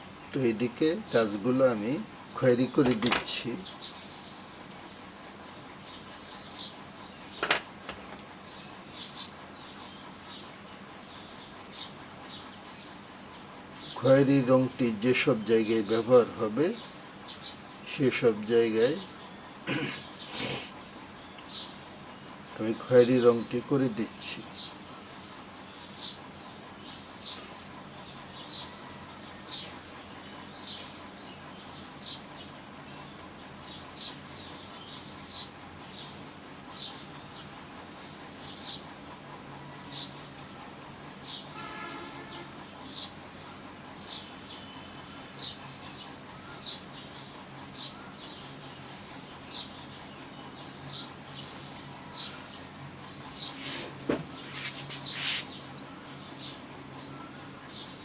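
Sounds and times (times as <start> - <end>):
pencil scratching on paper: 53.4 - 55.5.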